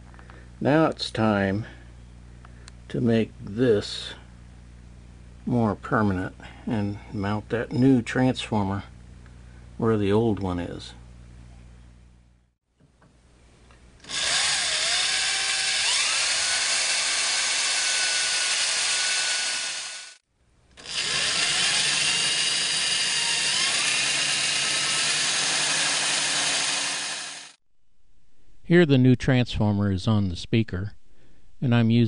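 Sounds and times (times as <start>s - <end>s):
power drill motor whine: 14.0s - 20.2s, 20.8s - 27.6s.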